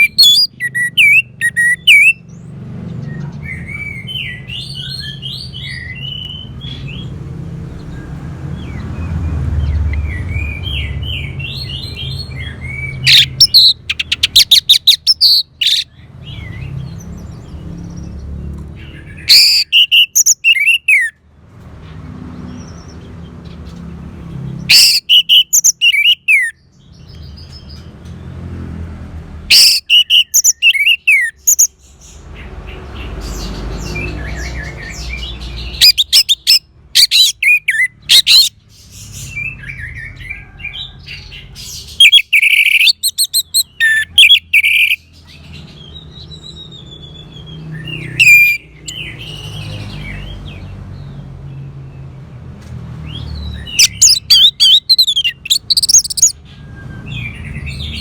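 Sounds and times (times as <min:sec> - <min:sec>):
bird singing whistled trills: 0:00.0 - 0:02.3, 0:09.9 - 0:16.7, 0:19.2 - 0:21.2, 0:24.7 - 0:26.6, 0:29.5 - 0:31.7, 0:33.9 - 0:38.5, 0:42.0 - 0:45.2, 0:45.8 - 0:49.6, 0:53.1 - 0:58.0.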